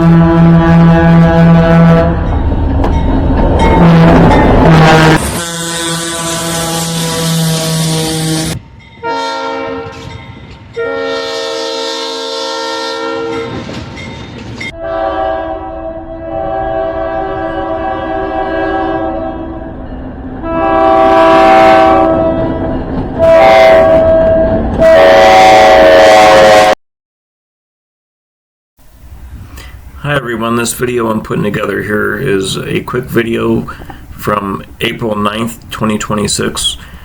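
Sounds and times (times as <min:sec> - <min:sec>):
locomotive air horn blast: 0:00.0 - 0:02.4, 0:03.6 - 0:10.1, 0:10.8 - 0:13.6, 0:14.8 - 0:19.8, 0:20.4 - 0:22.6, 0:23.2 - 0:26.8.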